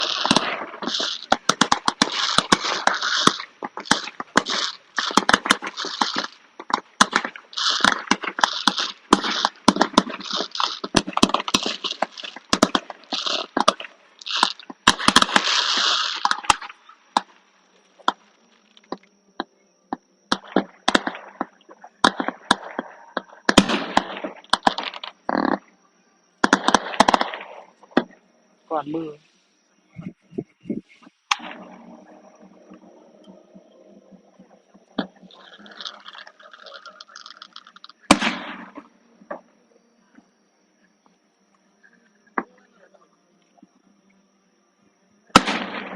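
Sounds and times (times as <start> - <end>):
fireworks crackling: 0.0 - 19.1, 20.3 - 25.6, 26.4 - 29.2, 30.9 - 39.4, 45.3 - 45.9
faint steady high whine: 0.0 - 45.9.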